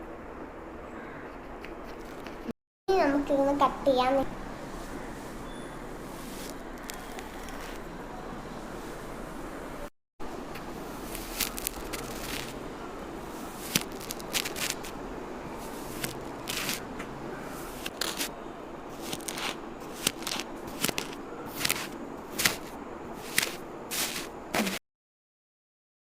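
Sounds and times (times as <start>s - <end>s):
sand being cut and scraped: 11.0s - 12.6s, 13.4s - 15.0s, 15.6s - 16.8s, 17.5s - 18.3s, 18.9s - 24.8s.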